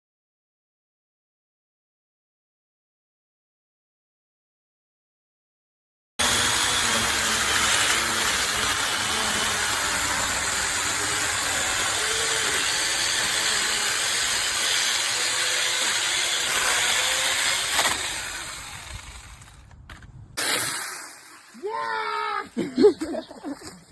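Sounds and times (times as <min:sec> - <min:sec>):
chainsaw whirring: 0:06.2 - 0:21.5.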